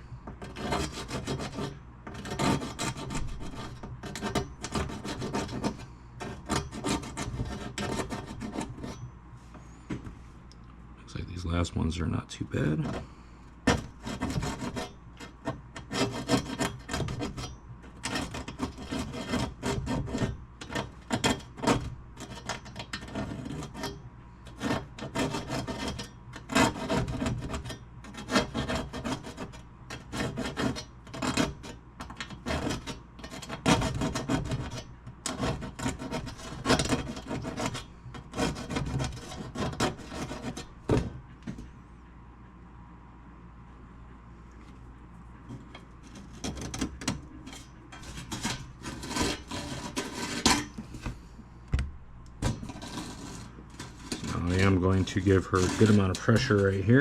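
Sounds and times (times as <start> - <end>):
razor blade scraping finish: 52.6 - 57.0.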